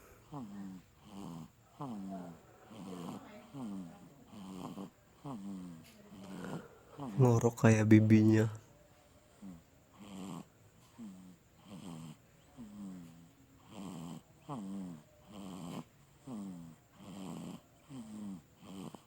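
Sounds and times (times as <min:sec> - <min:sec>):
baby snoring: 0:00.0 - 0:08.4, 0:09.3 - 0:19.0.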